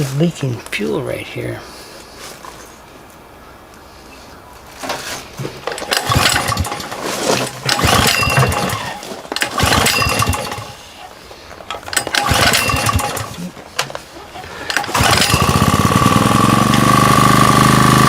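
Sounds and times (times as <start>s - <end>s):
generator engine being pull-started: 4.8s - 18.0s.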